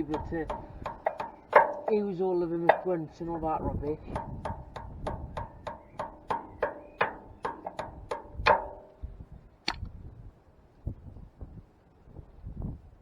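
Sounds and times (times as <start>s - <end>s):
hammer striking metal drum: 0.0s - 3.1s, 4.1s - 9.0s.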